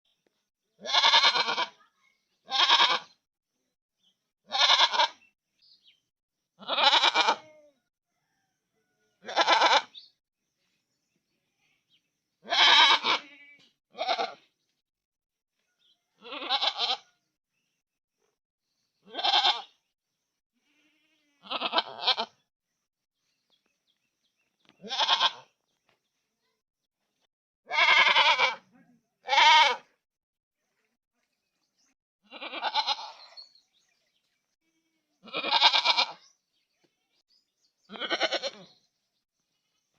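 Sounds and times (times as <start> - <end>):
goat bleating: 0.8 - 1.8, 2.4 - 3.2, 4.4 - 5.3, 6.6 - 7.8, 9.2 - 10.0, 12.4 - 14.5, 16.2 - 17.2, 19.0 - 19.8, 20.6 - 22.4, 24.8 - 25.5, 27.6 - 29.9, 32.2 - 33.5, 34.6 - 36.2, 37.9 - 38.8.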